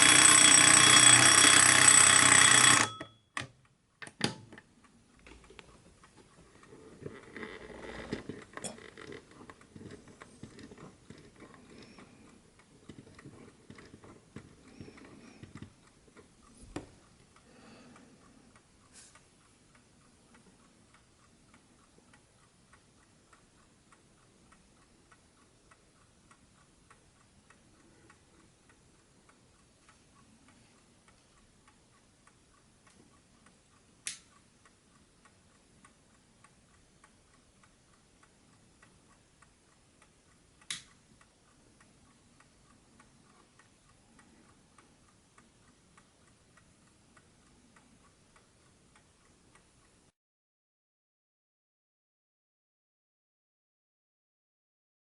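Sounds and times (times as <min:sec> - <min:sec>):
alarm clock ticking softly: 0:00.0 - 0:03.8, 0:08.3 - 0:50.1.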